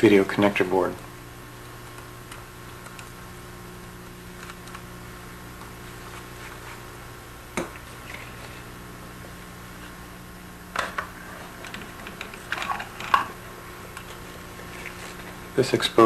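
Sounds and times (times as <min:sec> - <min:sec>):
low electrical hum: 0:00.0 - 0:16.0.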